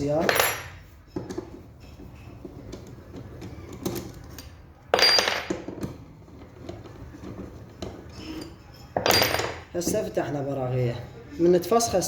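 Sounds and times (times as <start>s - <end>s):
spanner clinking on metal bolts: 0.0s - 2.8s, 3.4s - 5.9s, 7.7s - 10.2s
metallic clatter and ring: 8.1s - 9.7s.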